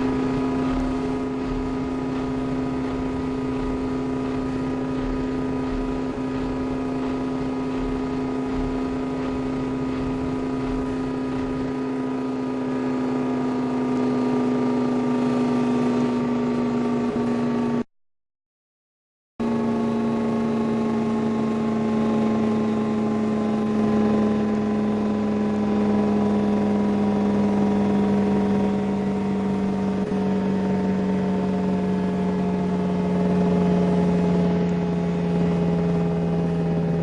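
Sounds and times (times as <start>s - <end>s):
low knocking: 0.0s - 12.4s
washing machine motor hum: 0.0s - 12.6s.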